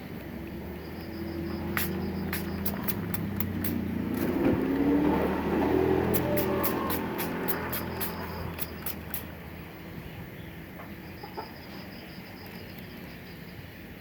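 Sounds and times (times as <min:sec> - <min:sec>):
vehicle engine passing: 0:00.3 - 0:09.9.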